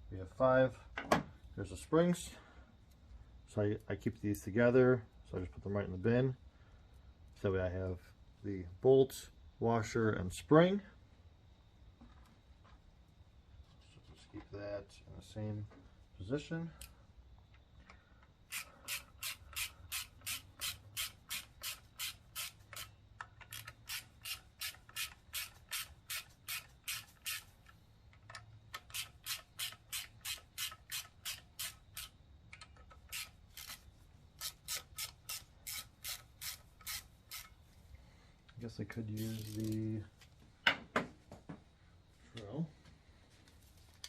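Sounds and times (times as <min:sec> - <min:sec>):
hand ratchet clicking: 0:18.5 - 0:37.6, 0:39.2 - 0:39.8.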